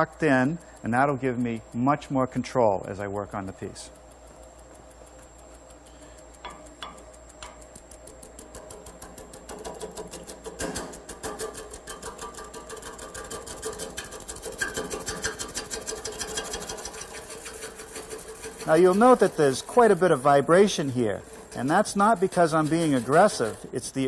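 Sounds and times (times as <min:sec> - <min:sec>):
lathe motor hum: 0:12.7 - 0:24.0.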